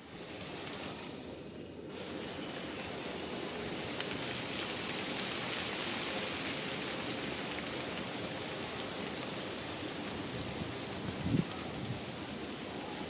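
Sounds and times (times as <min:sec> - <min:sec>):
rain-like hiss: 0:00.0 - 0:13.0.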